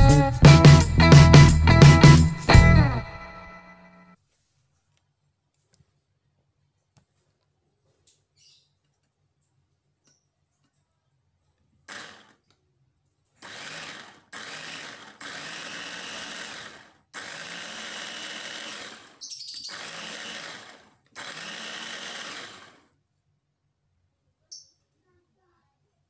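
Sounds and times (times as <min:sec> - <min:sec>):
mini chopper motor whining: 0:11.9 - 0:12.4, 0:13.4 - 0:22.9.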